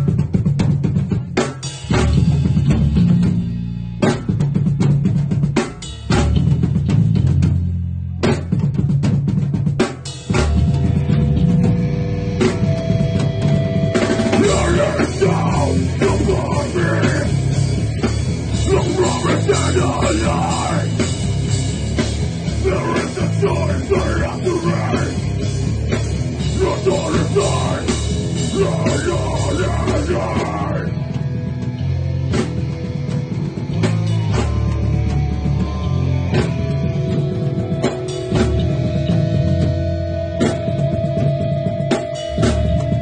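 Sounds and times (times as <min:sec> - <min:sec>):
loud rock music: 0:00.0 - 0:43.0.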